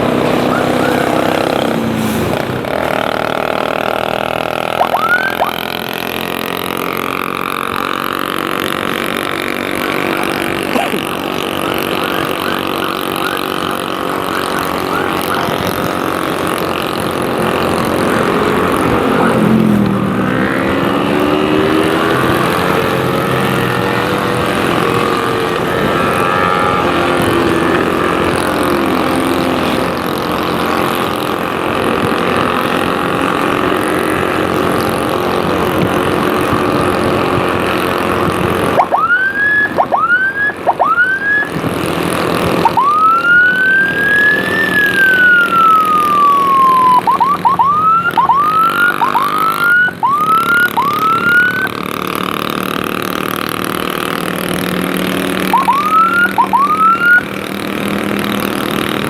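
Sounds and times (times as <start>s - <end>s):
motorcycle engine running: 0.0s - 59.0s
road and wind noise: 0.0s - 59.0s
wavering gliding tone: 0.1s - 3.0s, 3.6s - 29.5s, 38.6s - 51.8s, 55.4s - 57.3s.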